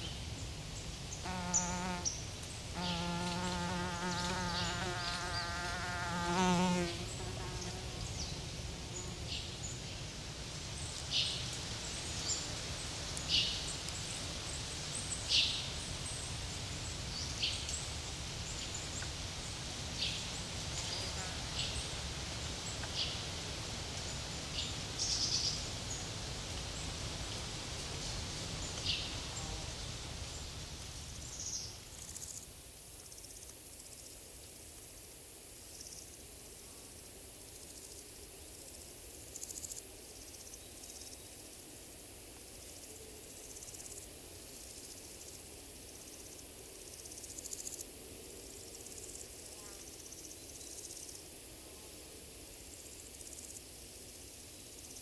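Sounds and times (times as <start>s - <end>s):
gentle breeze: 0.0s - 55.0s
crickets chirring: 29.7s - 55.0s.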